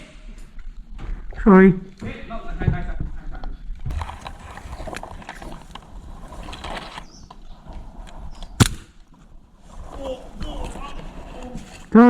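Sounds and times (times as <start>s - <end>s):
sharp crack: 8.4s - 9.3s.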